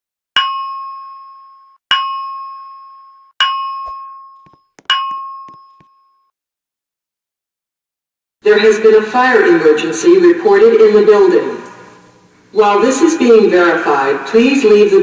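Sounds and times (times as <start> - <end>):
bell-like alarm chime: 0.4 - 6.3.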